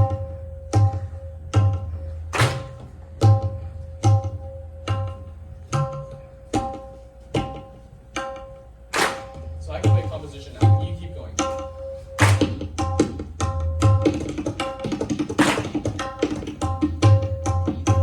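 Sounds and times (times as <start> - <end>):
tabla ringing strokes: 0.0 - 18.0.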